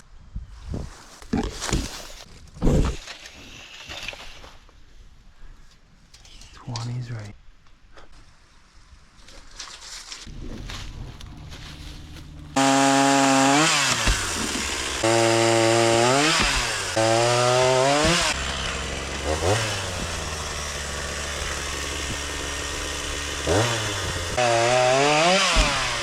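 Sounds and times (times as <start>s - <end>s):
chainsaw engine revving: 12.6s - 26.0s.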